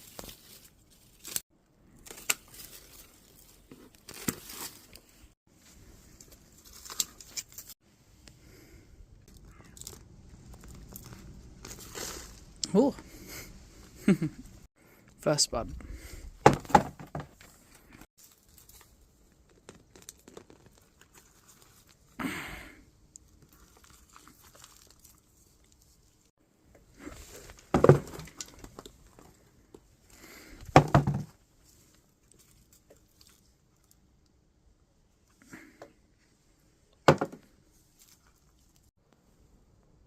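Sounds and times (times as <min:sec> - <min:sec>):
hands rummaging through soil: 0:09.7 - 0:12.6.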